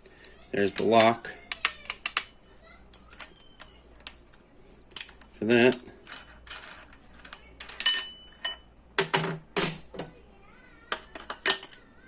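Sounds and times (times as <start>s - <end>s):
metal parts clinking: 4.9s - 8.7s.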